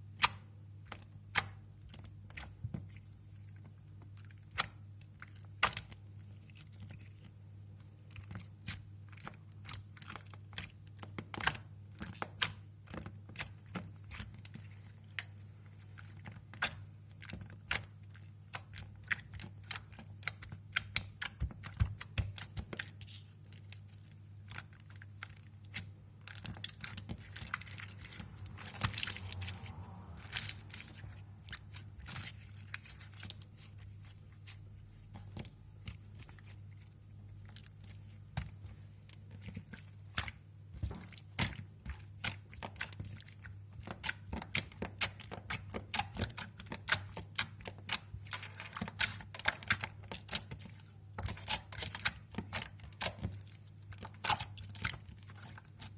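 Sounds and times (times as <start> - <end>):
steady low hum: 23.2 - 41.2.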